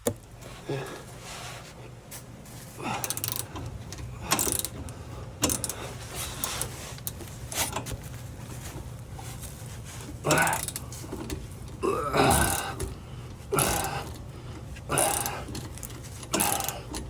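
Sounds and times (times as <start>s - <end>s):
steady low hum: 0.0s - 17.0s
wrench scraping and ratcheting: 3.0s - 4.8s, 5.4s - 7.8s, 10.3s - 11.4s, 14.9s - 17.0s.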